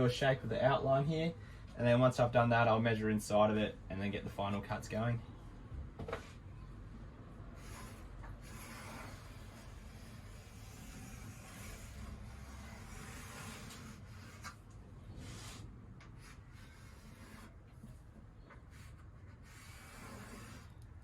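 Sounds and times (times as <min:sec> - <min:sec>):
pencil scratching on wood: 0:07.6 - 0:14.6, 0:16.1 - 0:18.0, 0:18.7 - 0:20.8.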